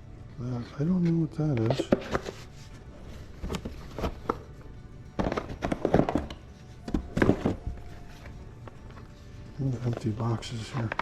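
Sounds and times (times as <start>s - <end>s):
background music: 0.0s - 11.0s
boxes knocking and clattering: 1.5s - 2.4s, 3.3s - 8.3s.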